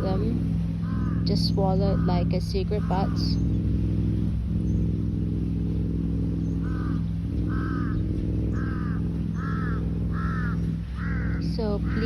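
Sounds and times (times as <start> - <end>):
steady low hum: 0.0 - 12.0
crow cawing: 0.8 - 3.4, 6.6 - 12.0.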